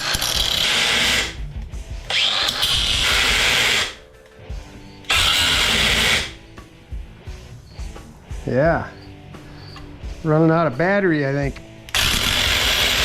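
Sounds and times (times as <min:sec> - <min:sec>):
cut-off saw cutting metal: 0:00.0 - 0:01.4, 0:02.1 - 0:04.0, 0:05.1 - 0:06.4, 0:11.9 - 0:13.0.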